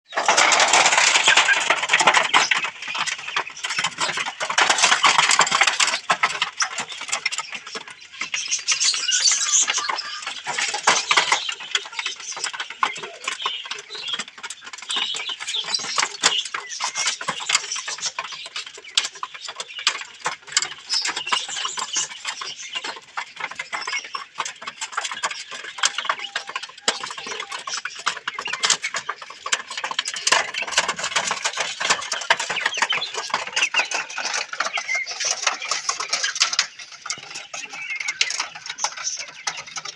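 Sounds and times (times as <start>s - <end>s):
chickens clucking: 0.1s - 39.9s.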